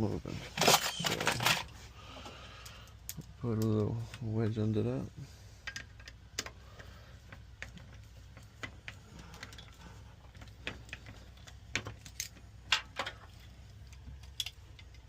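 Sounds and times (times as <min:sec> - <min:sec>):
small metallic clicks and taps: 0:05.6 - 0:15.0.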